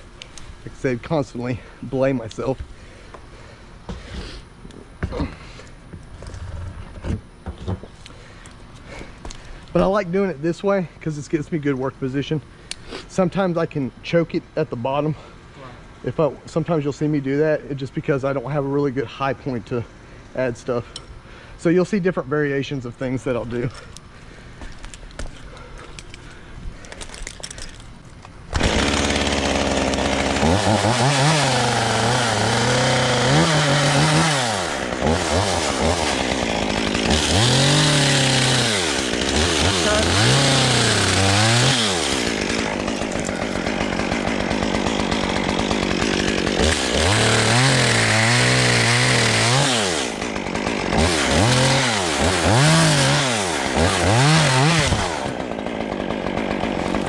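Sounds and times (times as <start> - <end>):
chainsaw cutting small branches: 24.7 - 57.0
chainsaw revving: 28.6 - 57.0.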